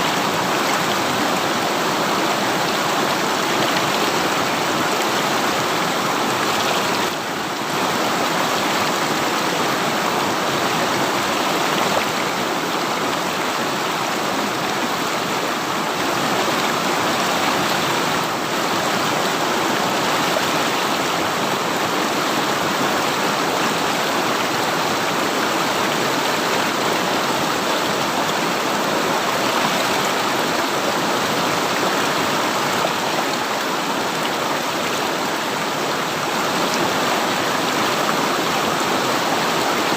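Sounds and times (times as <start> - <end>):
river water rushing over stones: 0.0 - 39.9.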